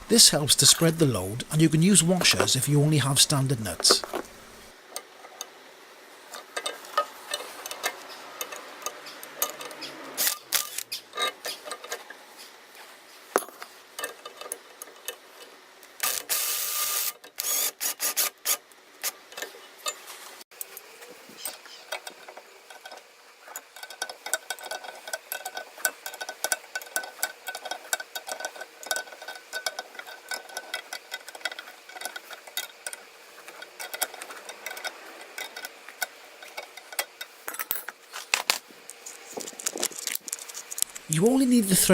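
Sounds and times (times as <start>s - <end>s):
spanners and nuts clinking on metal: 20.7s - 41.4s.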